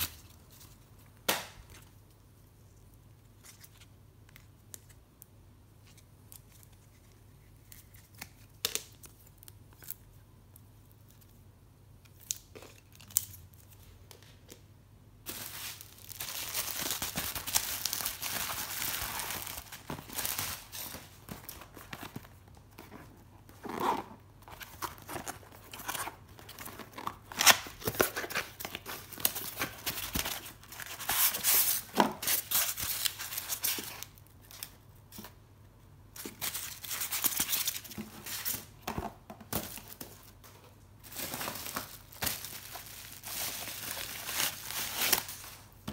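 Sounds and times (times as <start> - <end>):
packaging torn and crinkled: 15.3 - 22.2.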